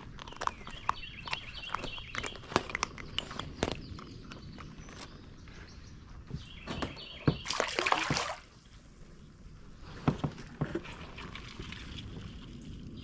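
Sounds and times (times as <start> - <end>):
water splashing at a kayak: 6.8 - 9.0, 10.0 - 12.9.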